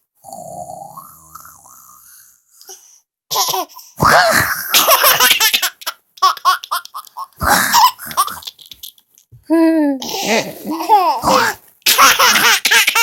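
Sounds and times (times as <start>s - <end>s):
baby laughing hard: 3.3s - 9.0s, 10.0s - 13.0s.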